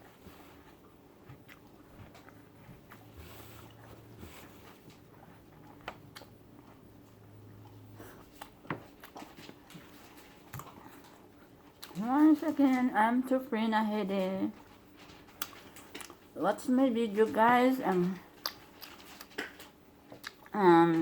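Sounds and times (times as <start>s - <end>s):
person chewing: 0.5s - 12.0s, 15.3s - 16.3s, 18.2s - 20.6s.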